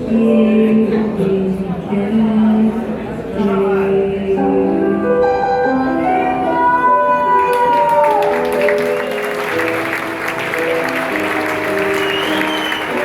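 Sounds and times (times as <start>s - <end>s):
audience applause: 7.4s - 13.0s.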